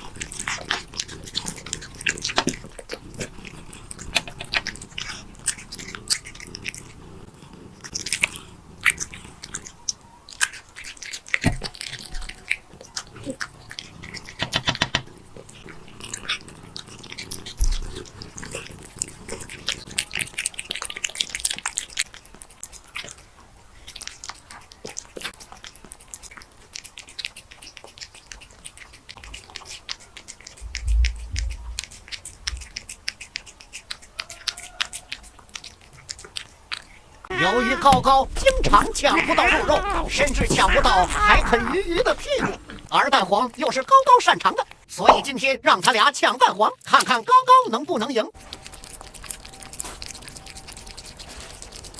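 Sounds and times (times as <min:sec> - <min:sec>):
cat chewing food: 0:00.0 - 0:44.9, 0:45.9 - 0:51.9
low thumps: 0:30.6 - 0:31.8.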